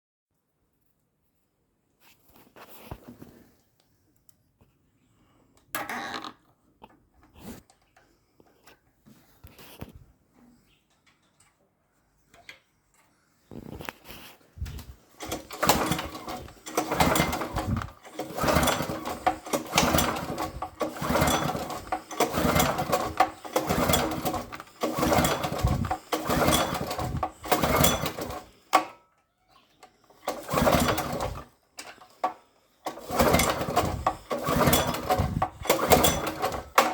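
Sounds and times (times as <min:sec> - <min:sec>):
engine cranked by recoil starter: 0:14.6 - 0:29.0, 0:29.8 - 0:36.9.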